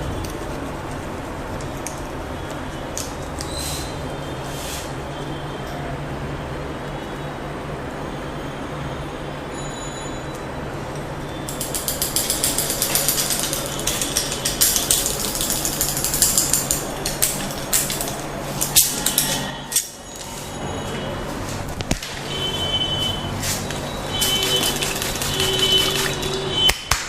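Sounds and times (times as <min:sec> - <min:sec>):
clicking and crackling of massage: 0:00.0 - 0:03.5, 0:11.0 - 0:19.9.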